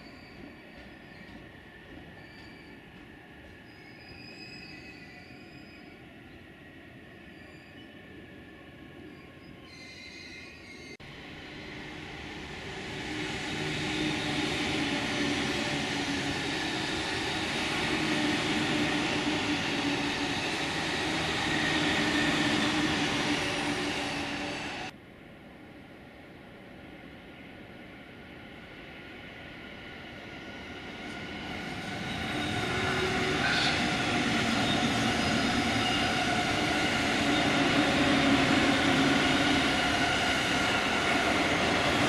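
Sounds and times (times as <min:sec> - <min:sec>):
train wheels rolling on rails: 0:00.0 - 0:05.7, 0:11.2 - 0:24.9, 0:30.4 - 0:42.0
faint high squealing tones: 0:00.0 - 0:11.0.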